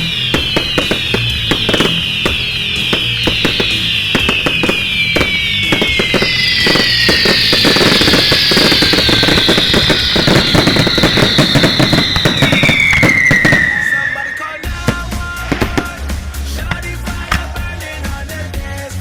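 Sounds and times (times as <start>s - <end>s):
fireworks whistles sliding down: 0.0s - 18.0s
fireworks crackling and popping: 0.0s - 18.4s
music with steady bass: 14.7s - 19.0s.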